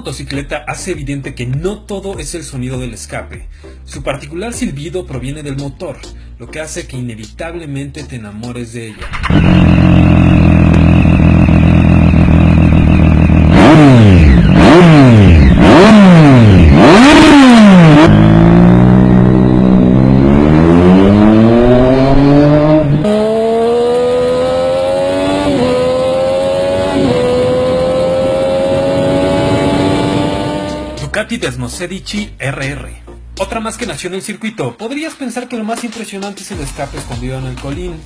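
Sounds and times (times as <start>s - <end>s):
motorcycle engine revving: 9.0s - 31.2s.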